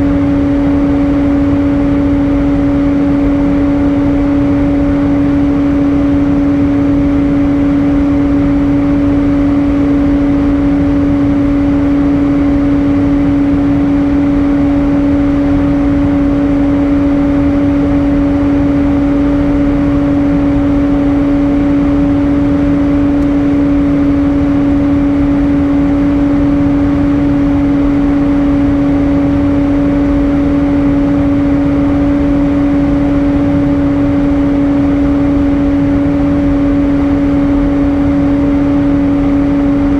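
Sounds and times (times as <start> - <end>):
airplane cabin noise: 0.0 - 39.9
constant hum: 0.0 - 39.9.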